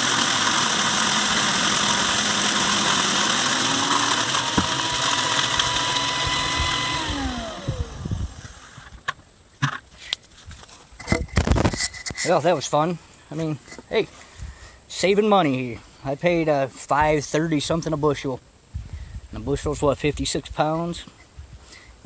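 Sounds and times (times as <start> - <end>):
wood chipper cracking corn: 0.0 - 9.0.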